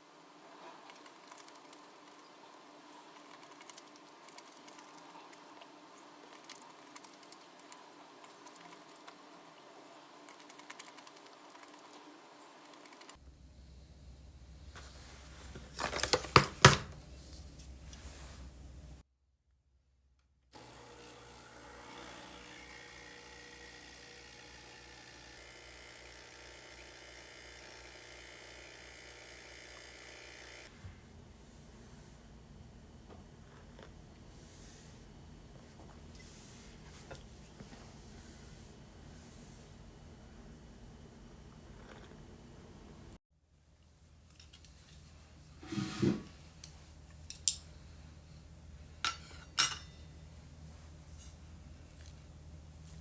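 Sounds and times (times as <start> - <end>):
quiet steady hum: 0.0 - 19.0, 30.6 - 53.0
small electric motor buzzing: 20.6 - 30.7.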